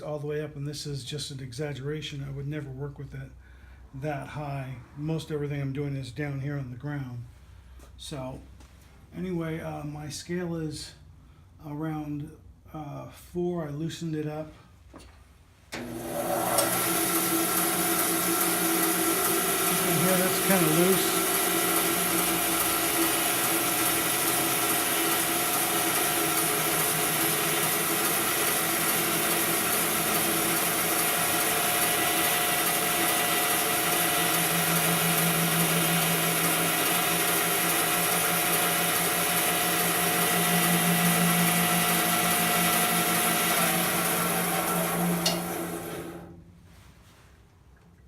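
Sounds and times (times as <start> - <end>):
bandsaw motor and blade hum: 15.8 - 46.4.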